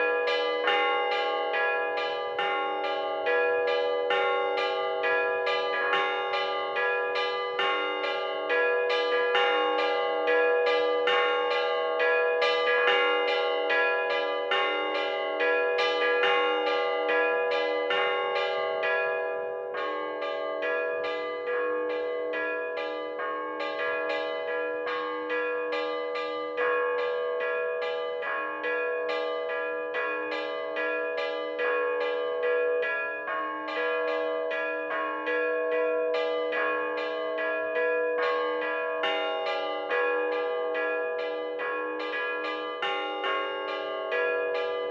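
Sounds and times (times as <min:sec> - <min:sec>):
church bells rung by hand: 0:00.0 - 0:44.9.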